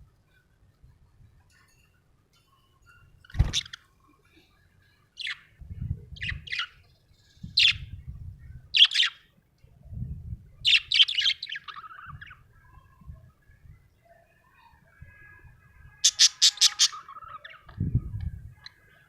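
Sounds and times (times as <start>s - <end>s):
budgerigar chirping and warbling: 8.8s - 9.2s, 16.0s - 17.6s.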